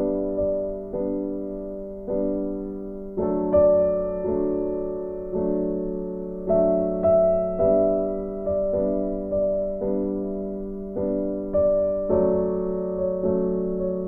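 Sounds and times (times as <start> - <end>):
gentle electric piano chords: 0.0 - 14.0.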